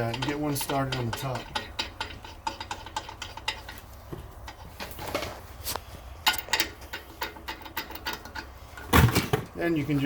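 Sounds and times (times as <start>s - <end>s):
metallic clicks of lug nut: 6.2s - 8.9s.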